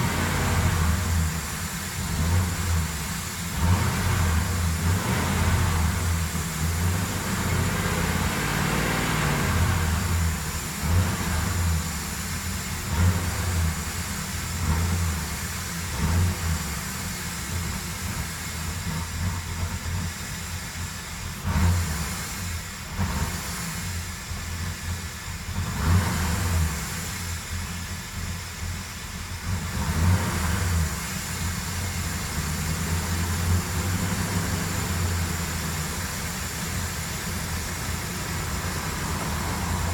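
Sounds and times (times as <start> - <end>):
car engine rumbling: 0.0 - 39.9.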